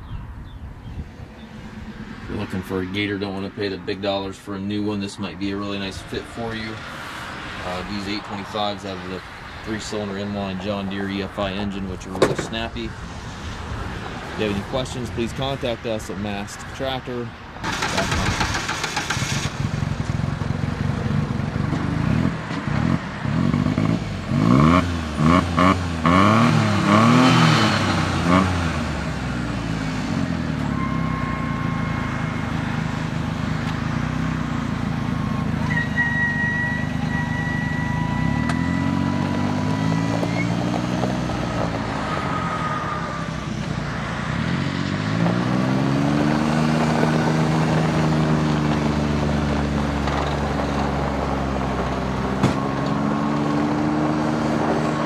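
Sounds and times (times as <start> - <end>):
utility vehicle engine revving: 0.8 - 4.3, 17.6 - 55.0.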